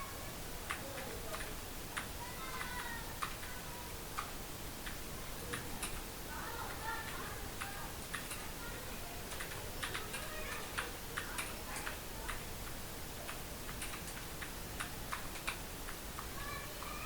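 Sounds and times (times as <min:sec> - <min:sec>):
keyboard keys clicking: 0:09.3 - 0:12.4, 0:13.2 - 0:16.3.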